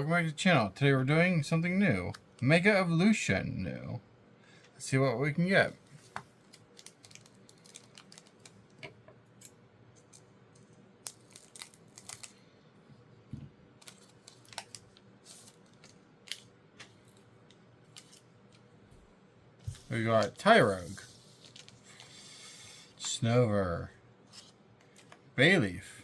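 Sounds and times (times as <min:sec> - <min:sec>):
foil wrapper crinkling: 0:06.5 - 0:08.6, 0:11.0 - 0:12.4, 0:13.8 - 0:16.5.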